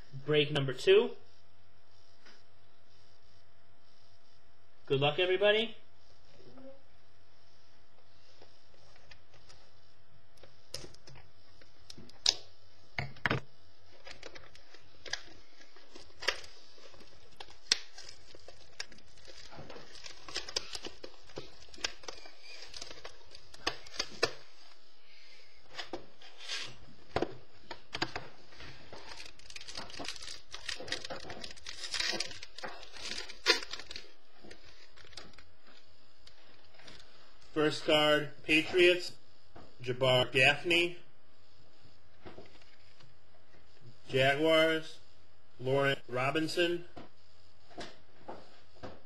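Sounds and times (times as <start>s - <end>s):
foil wrappers torn and crinkled: 16.2s - 24.4s, 29.0s - 35.4s.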